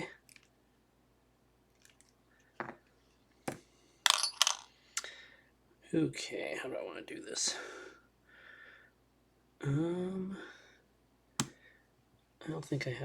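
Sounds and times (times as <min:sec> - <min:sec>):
metallic clicks and clinks: 0:04.1 - 0:04.7.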